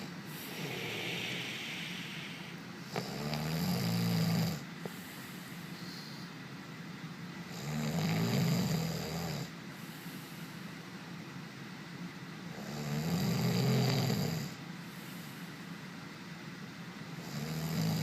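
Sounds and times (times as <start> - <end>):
quiet breathing: 0.0 - 3.2, 4.0 - 6.4, 9.7 - 10.9, 14.8 - 15.7
man snoring: 0.0 - 4.6, 7.5 - 9.5, 12.6 - 14.6, 17.2 - 18.0.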